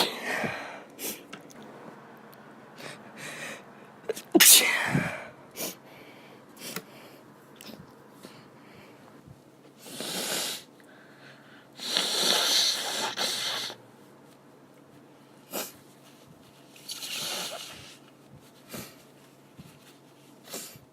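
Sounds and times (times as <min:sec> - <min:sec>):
woman blowing her nose: 0:09.8 - 0:10.7, 0:11.8 - 0:13.8, 0:16.9 - 0:18.0.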